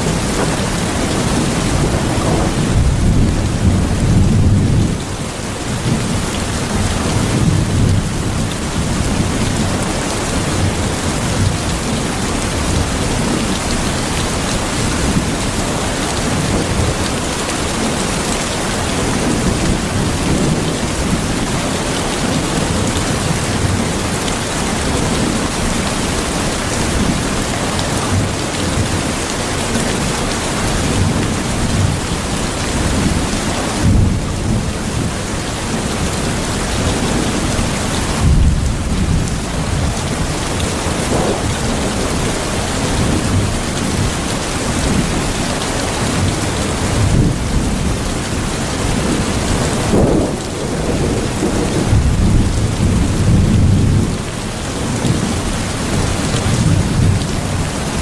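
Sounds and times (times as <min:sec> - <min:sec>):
heavy rain pattering: 0:00.0 - 0:58.0
rolls of thunder: 0:41.0 - 0:42.0, 0:49.8 - 0:54.1.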